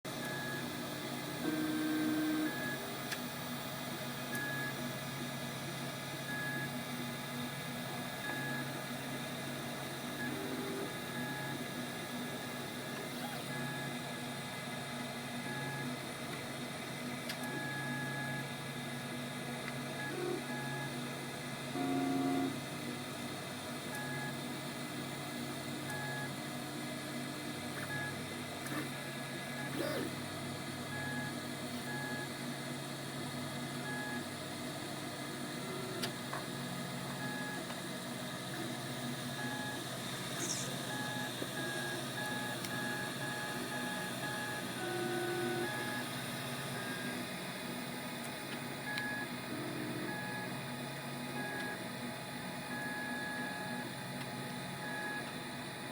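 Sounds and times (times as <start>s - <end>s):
machine hum: 0.1s - 3.2s, 9.8s - 14.0s, 35.4s - 50.7s
stepper motors whining: 40.4s - 41.8s.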